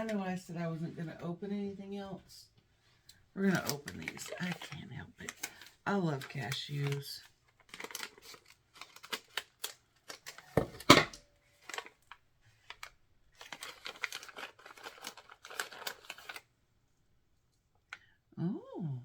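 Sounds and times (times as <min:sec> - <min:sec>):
snack bag crinkling: 0:03.4 - 0:10.6, 0:11.5 - 0:16.5
bag ripping open: 0:13.4 - 0:16.5.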